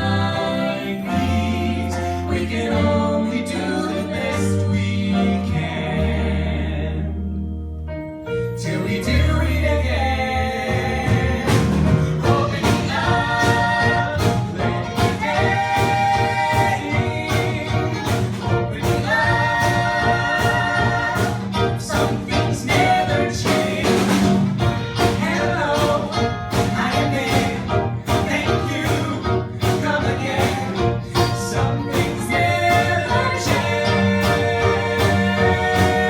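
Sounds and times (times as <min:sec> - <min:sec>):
voices singing: 0:00.0 - 0:07.4, 0:08.6 - 0:36.0
instrumental accompaniment with beat: 0:10.6 - 0:36.0.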